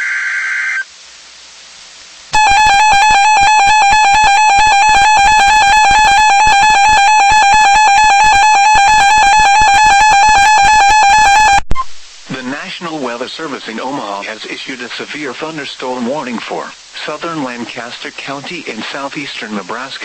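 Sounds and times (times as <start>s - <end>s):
harsh steady alert tone: 2.4s - 11.6s.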